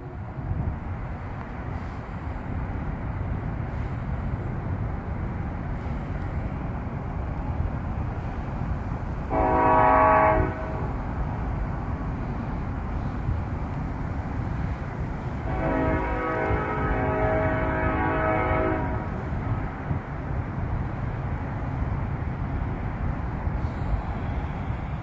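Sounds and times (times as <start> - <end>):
steady low rumble: 0.0 - 25.0
distant train horn: 9.2 - 11.4, 15.2 - 19.9.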